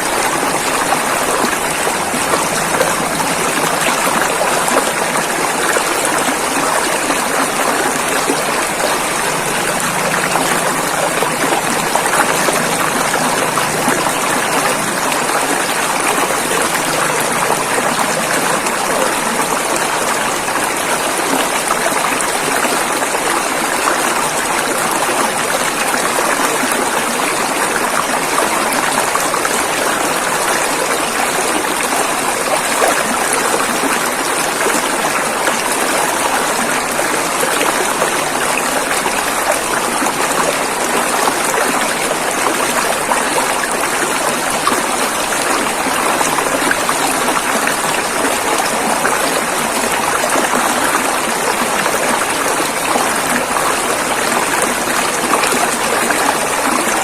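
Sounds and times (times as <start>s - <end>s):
river water rushing over rocks: 0.0s - 57.0s.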